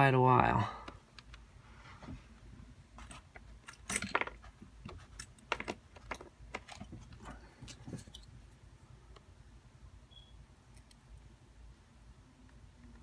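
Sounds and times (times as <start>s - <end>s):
padlock and metal tools rattling: 3.0s - 8.3s.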